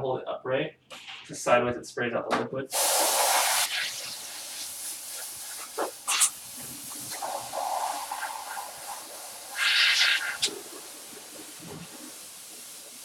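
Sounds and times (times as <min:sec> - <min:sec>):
compressed air spraying: 0:02.7 - 0:13.0
short air puffs: 0:02.7 - 0:13.0.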